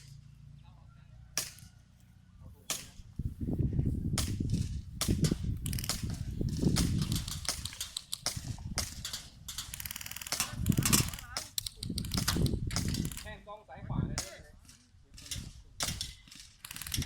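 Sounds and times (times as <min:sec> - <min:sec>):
airsoft guns firing: 0:04.2 - 0:13.4, 0:14.2 - 0:17.0.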